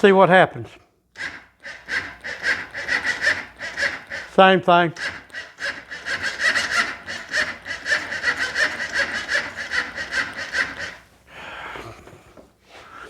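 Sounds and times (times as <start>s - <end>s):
electric starter cranking engine: 1.2s - 4.4s, 5.0s - 11.0s.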